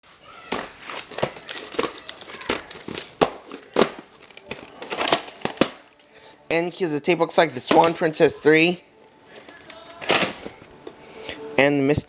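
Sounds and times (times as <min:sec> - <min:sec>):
plastic crinkling and clicking: 0:00.8 - 0:06.1.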